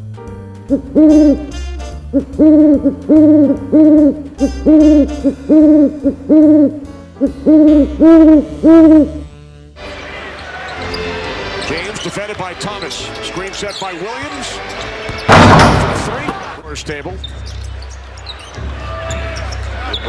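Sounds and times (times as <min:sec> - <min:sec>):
rising and falling pitched notes: 0:02.1 - 0:09.3.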